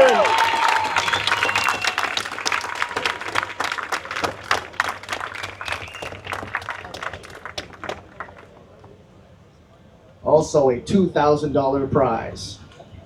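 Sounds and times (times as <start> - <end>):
crowd applauding: 0.0 - 8.9.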